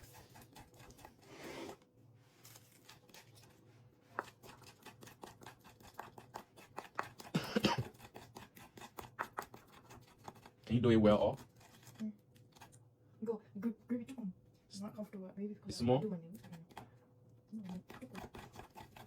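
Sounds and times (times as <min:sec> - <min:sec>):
pestle grinding in clay bowl: 0:00.0 - 0:01.8, 0:02.6 - 0:12.8, 0:16.4 - 0:19.0.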